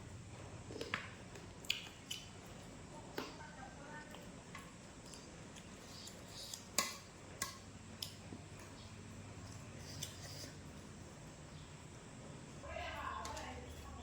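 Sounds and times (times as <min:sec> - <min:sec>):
person chewing: 0:00.7 - 0:02.7, 0:04.9 - 0:10.8.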